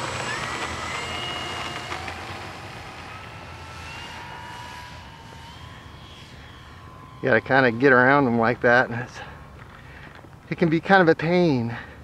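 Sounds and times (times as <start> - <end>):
model plane motor whining: 0.0 - 10.3.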